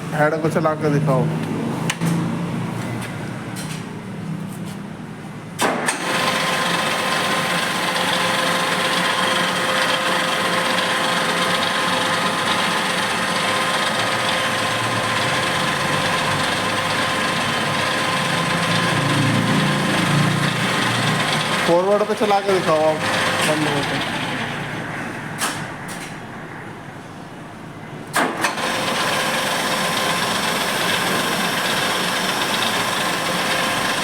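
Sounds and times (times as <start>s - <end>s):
milling machine whine: 6.0s - 25.1s, 28.5s - 34.0s.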